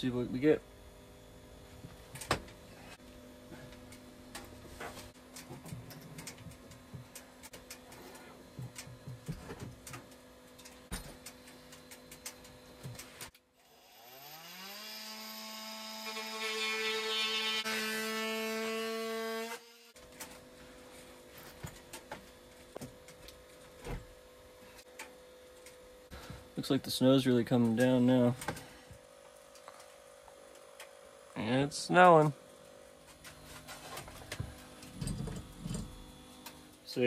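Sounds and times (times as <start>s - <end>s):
power tool cutting wood: 13.6s - 20.0s.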